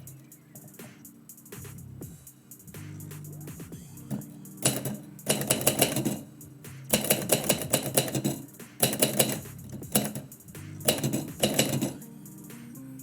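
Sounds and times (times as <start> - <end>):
typewriter keys clattering: 4.1 - 6.3, 6.9 - 10.3, 10.9 - 12.0.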